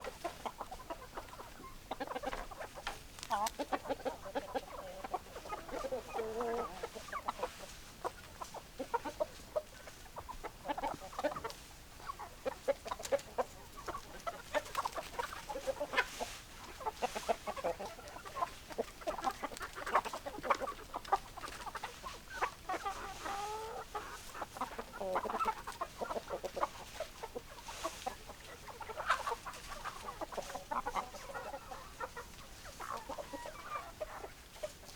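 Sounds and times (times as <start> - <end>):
hens clucking: 0.0 - 34.9.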